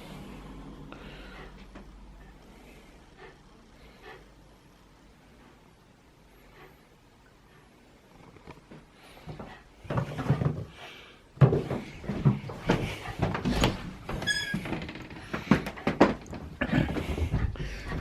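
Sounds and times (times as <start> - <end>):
household knocks and thumps: 15.2 - 18.0.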